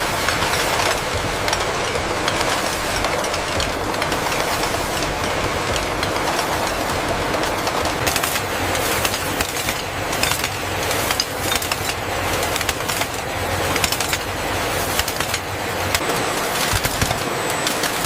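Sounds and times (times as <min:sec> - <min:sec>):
machinery clicks and rattles: 0:00.0 - 0:18.0
processing machinery running: 0:00.0 - 0:18.0.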